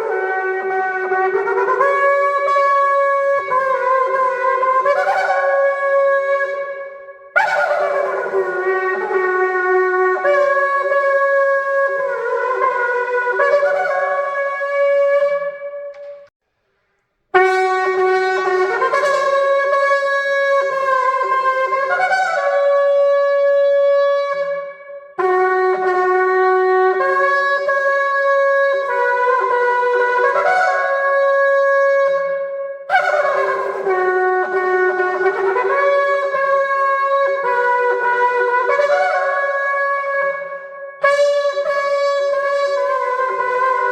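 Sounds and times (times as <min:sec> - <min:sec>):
shofar blasts: 0:17.4 - 0:43.9.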